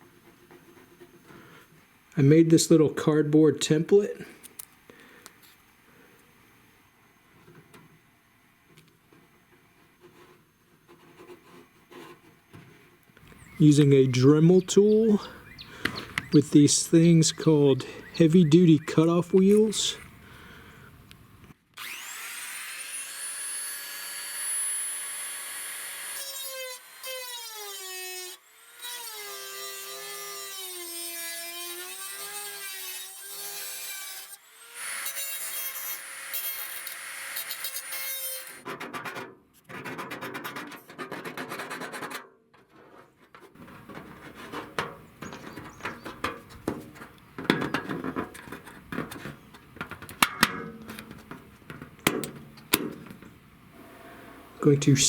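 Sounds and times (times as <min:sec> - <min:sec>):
rotary tool whining: 0:21.8 - 0:30.8
cutoff wheel scraping metal: 0:43.6 - 0:54.6.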